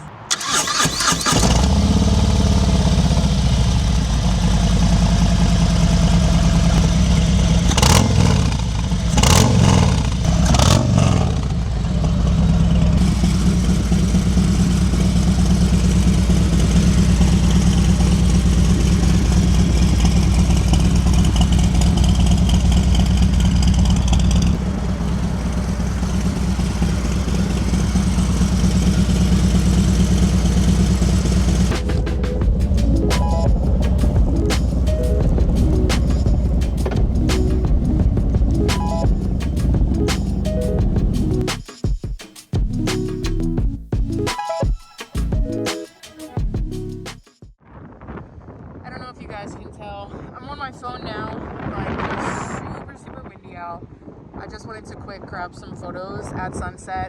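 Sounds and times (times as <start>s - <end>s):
motorcycle engine idling: 0.3s - 41.7s
motorcycle throttle blips: 0.3s - 41.7s.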